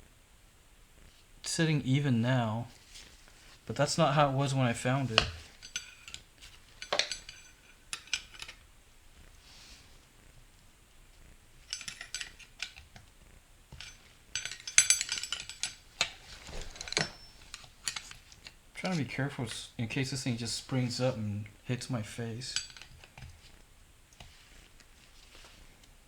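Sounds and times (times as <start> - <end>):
metal parts clinking and scraping: 3.8 - 8.6, 11.6 - 13.0, 13.7 - 19.0, 22.0 - 23.6.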